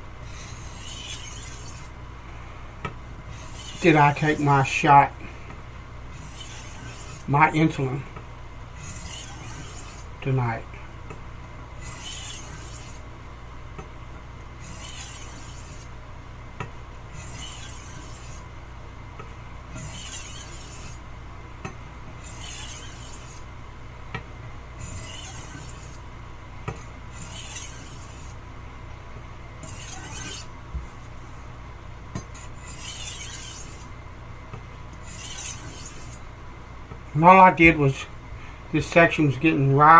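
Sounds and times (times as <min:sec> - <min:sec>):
knife scraping on sharpening stone: 0:00.4 - 0:01.9, 0:03.3 - 0:04.7, 0:06.2 - 0:07.3, 0:08.8 - 0:10.1, 0:11.8 - 0:13.0, 0:14.6 - 0:15.8, 0:17.2 - 0:18.4, 0:19.8 - 0:21.0, 0:22.2 - 0:23.4, 0:24.8 - 0:26.0, 0:27.1 - 0:28.3, 0:29.6 - 0:30.5, 0:32.4 - 0:33.9, 0:35.0 - 0:36.2.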